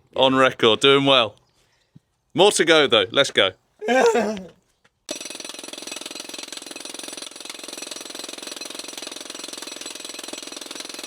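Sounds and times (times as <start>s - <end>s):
jackhammer breaking concrete: 5.1s - 11.0s.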